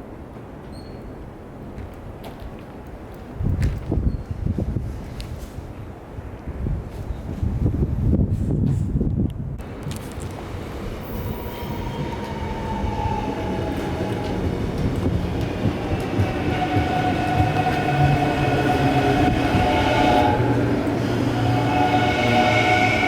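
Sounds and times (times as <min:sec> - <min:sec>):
electric train rumbling and whining: 0:07.3 - 0:23.0.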